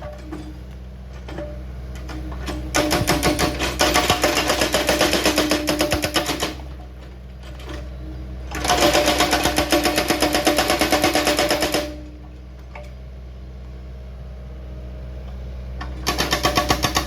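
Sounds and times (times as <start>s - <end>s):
diesel engine running: 0.0s - 17.0s
hydraulic breaker hammering stone: 1.2s - 6.8s, 8.5s - 12.1s, 15.8s - 17.0s.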